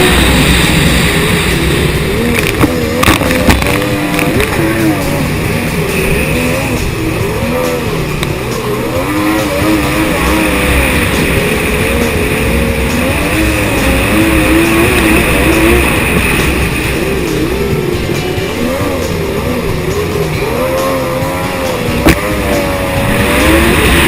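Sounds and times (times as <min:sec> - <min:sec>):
jet ski engine running: 0:00.0 - 0:24.0.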